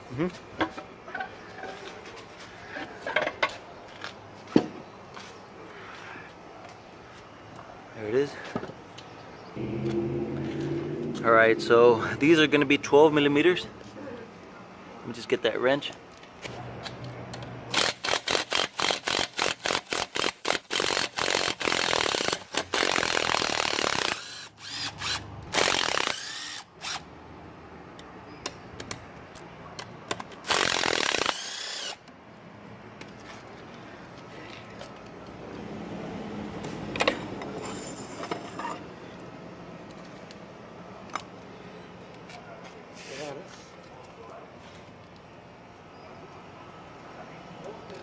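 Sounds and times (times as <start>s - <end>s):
power wrench running: 17.7s - 27.0s, 30.4s - 32.0s.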